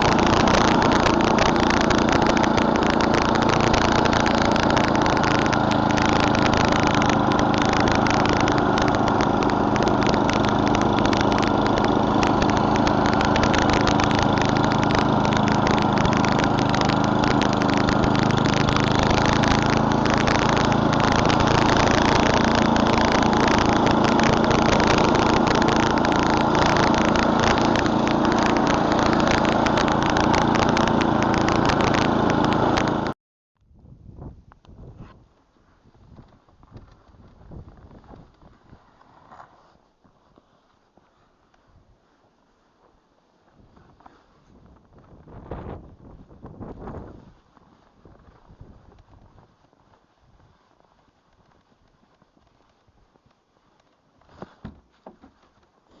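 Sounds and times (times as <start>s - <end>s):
snowblower engine running: 0.0s - 33.2s.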